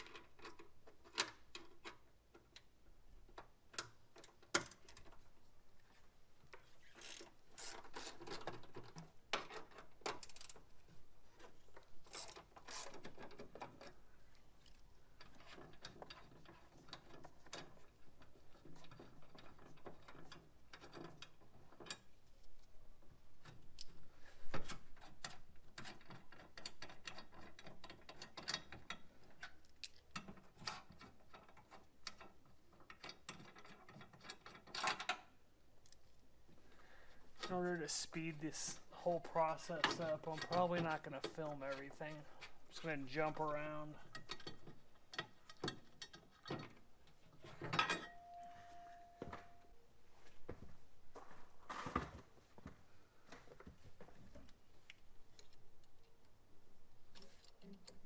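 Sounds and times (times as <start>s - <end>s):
clanks of metal tools: 39.3s - 46.7s, 47.6s - 49.6s.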